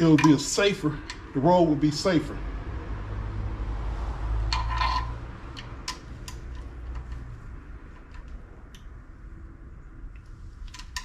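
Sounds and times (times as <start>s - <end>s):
metal tools clicking: 0.0s - 1.3s
metallic rattle: 4.5s - 8.7s.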